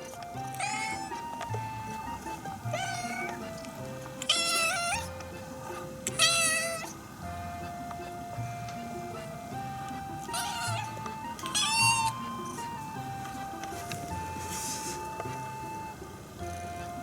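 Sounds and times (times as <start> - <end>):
background music: 0.0 - 17.0
kitten meowing: 0.1 - 5.2, 6.0 - 7.0, 10.2 - 12.9.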